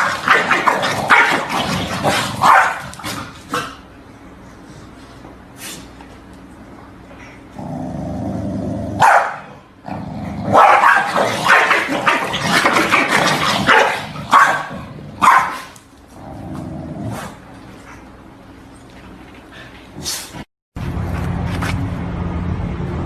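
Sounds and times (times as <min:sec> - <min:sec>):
dog barking: 0:02.1 - 0:03.0, 0:09.0 - 0:09.6, 0:10.5 - 0:12.3, 0:12.9 - 0:15.7.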